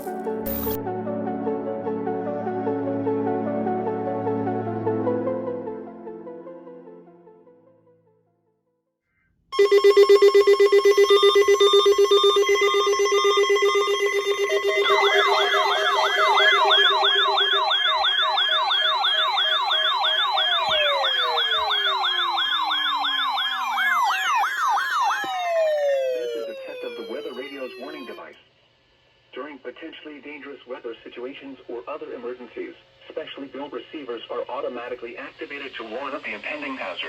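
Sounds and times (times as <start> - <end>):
electronic beeping tones: 0.0 - 0.8, 9.6 - 24.1, 25.4 - 28.2
steady buzzing alarm tone: 0.0 - 0.8, 9.6 - 28.3
falling siren sweeps: 9.6 - 28.3
fast yelping siren: 9.6 - 28.3.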